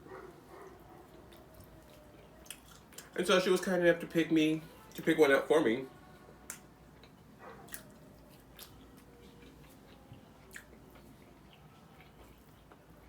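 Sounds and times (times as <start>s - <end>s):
faint chewing: 0.0s - 3.2s, 6.4s - 13.0s.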